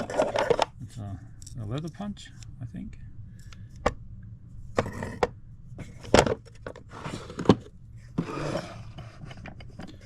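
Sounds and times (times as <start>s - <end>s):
tools scraping and rustling: 0.0s - 0.8s, 4.7s - 10.0s.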